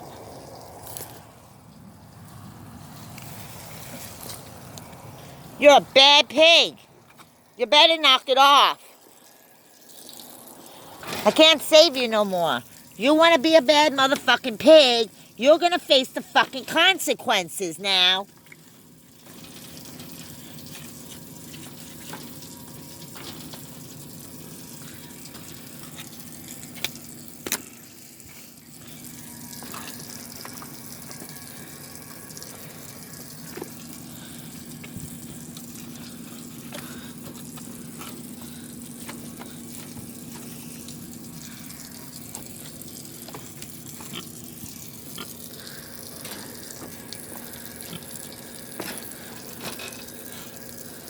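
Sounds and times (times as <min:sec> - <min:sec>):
running water: 0:02.9 - 0:51.0.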